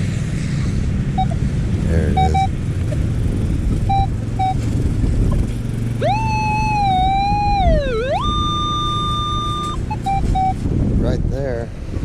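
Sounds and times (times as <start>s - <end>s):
wind and surf rumble: 0.0s - 12.0s
metal detector tones: 1.2s - 1.4s, 2.2s - 2.5s, 3.9s - 4.6s, 6.0s - 10.6s.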